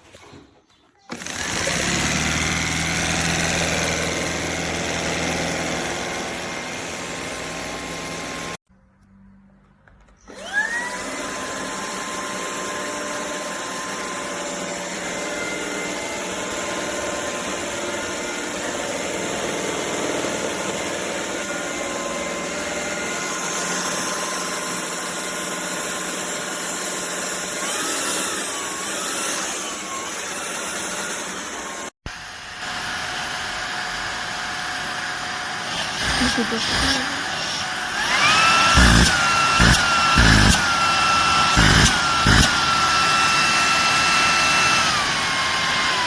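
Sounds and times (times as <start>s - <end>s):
vacuum cleaner motor whine: 10.3s - 24.4s, 31.2s - 46.0s.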